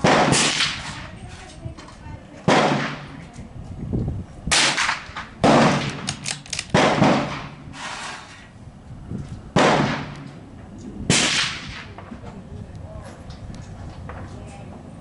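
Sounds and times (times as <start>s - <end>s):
rifle shots with echo: 0.0s - 1.0s, 2.4s - 3.2s, 4.5s - 7.6s, 9.6s - 10.2s, 11.1s - 12.1s
wind noise: 0.0s - 15.0s.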